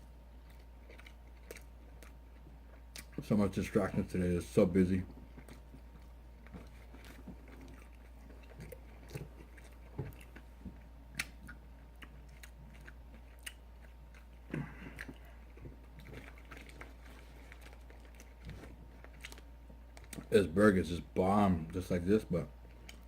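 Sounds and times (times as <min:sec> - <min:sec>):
person chewing: 0:00.3 - 0:03.8, 0:04.4 - 0:20.3, 0:22.6 - 0:23.0
wet mouth clicks: 0:11.1 - 0:13.6.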